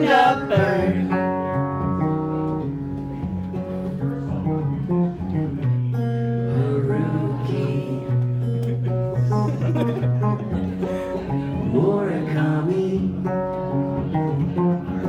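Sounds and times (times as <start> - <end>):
person singing: 0.0 - 1.3, 6.5 - 8.3, 11.3 - 13.3
live band music: 0.0 - 11.6
guitar playing: 0.0 - 15.0.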